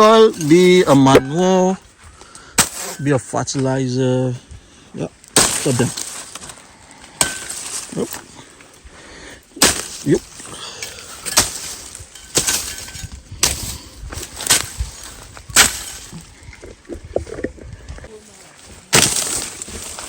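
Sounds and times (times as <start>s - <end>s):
corn ears snapping off: 5.3s - 8.3s, 9.6s - 16.3s, 18.9s - 20.0s.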